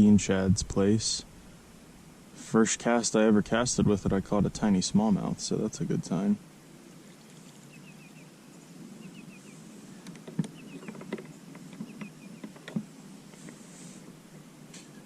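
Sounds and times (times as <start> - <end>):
sharp clicks and knocks: 10.0 - 13.6.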